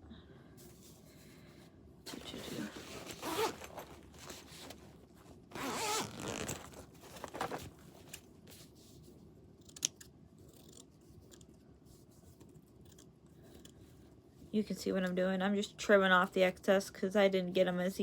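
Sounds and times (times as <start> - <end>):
scissors snipping fabric: 9.6 - 11.5.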